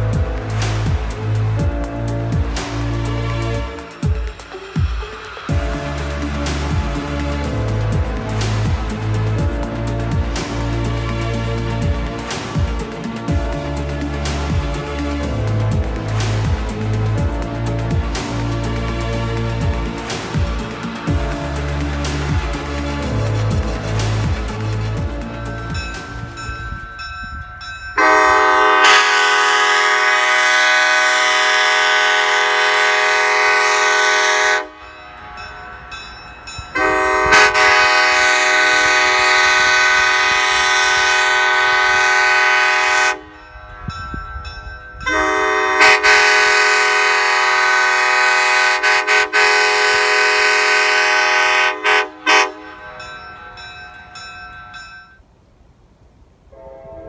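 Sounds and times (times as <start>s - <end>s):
train horn blasts: 28.0s - 36.1s, 36.7s - 44.2s, 45.0s - 54.9s, 56.5s - 57.0s.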